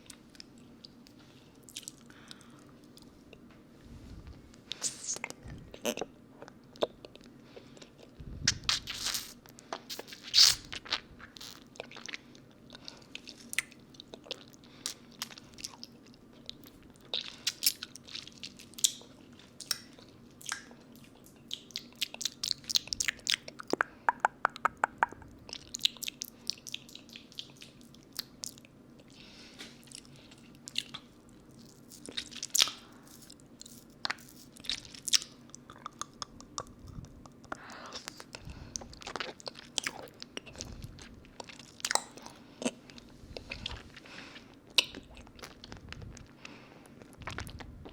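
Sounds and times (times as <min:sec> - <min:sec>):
mouth sucking and licking lollipop: 0:04.8 - 0:06.1, 0:08.1 - 0:12.2.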